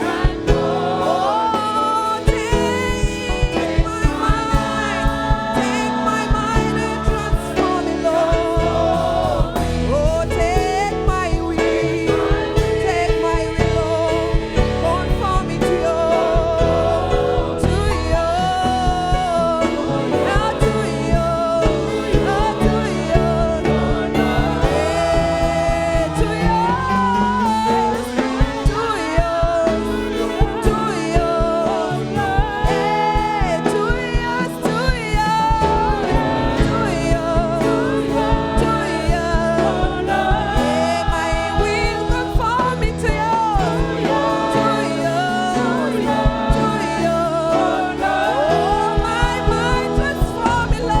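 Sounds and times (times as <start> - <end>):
gospel singing: 0.0 - 51.0
keyboard chords: 0.0 - 51.0
steady drum beat: 0.0 - 51.0.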